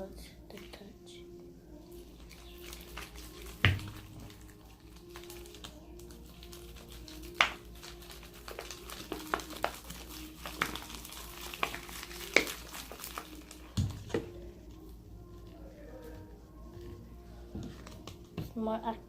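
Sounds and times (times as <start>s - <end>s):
slime clicking and squelching: 2.0s - 14.9s.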